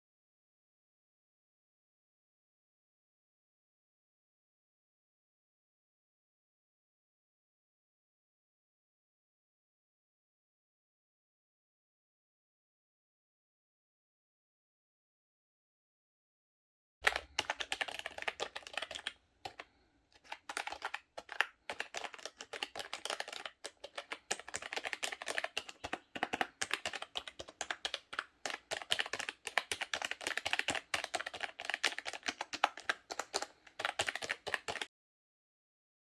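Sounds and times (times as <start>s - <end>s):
keyboard typing clicks: 17.0s - 34.9s.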